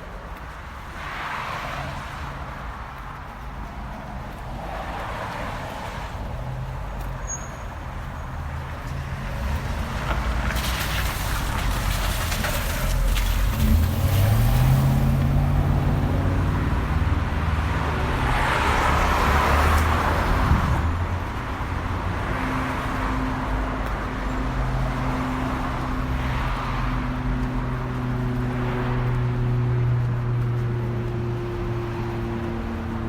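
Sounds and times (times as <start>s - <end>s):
car passing by: 1.0s - 2.6s, 3.4s - 7.4s, 8.2s - 33.0s
car pulling away: 8.6s - 21.1s
steady engine hum: 12.0s - 33.0s.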